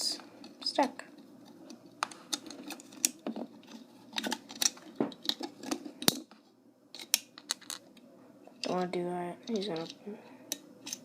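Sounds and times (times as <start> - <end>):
toy handcuff clicking and scraping: 9.4 - 11.0.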